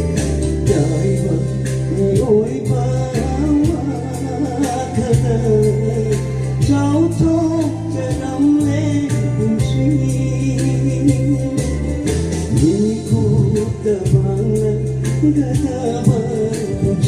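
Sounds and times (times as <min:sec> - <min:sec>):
song with singing voice: 0:00.0 - 0:17.0.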